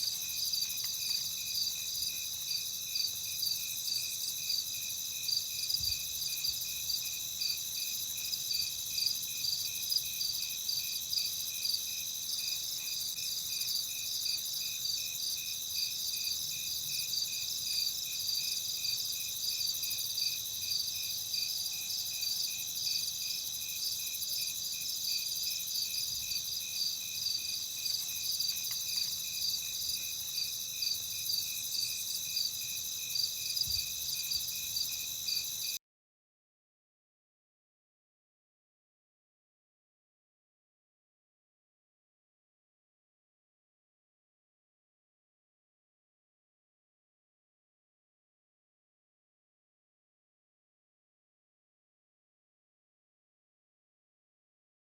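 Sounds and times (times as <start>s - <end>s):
crickets chirping: 0.0s - 35.8s.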